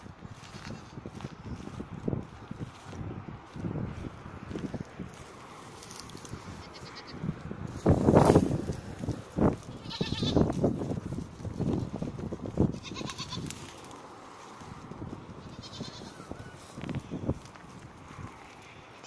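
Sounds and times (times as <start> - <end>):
goats bleating: 6.5 - 7.2, 9.7 - 10.5, 12.7 - 13.6, 15.4 - 16.4.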